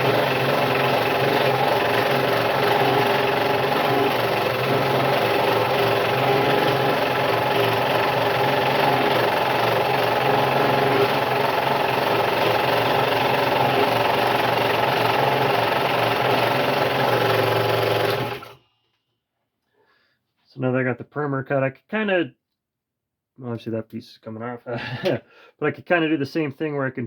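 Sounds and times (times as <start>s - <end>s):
scroll saw cutting wood: 0.0s - 18.6s.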